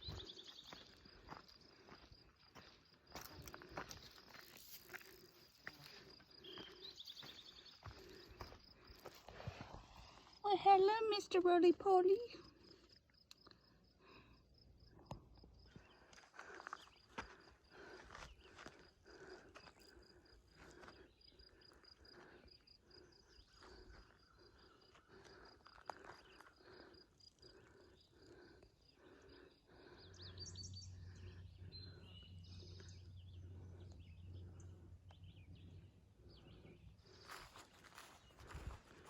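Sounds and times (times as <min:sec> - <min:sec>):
bird chirps: 0:00.0 - 0:01.1, 0:06.3 - 0:08.4
footsteps on forest trail: 0:00.0 - 0:11.0, 0:15.6 - 0:34.7, 0:36.3 - 0:39.0.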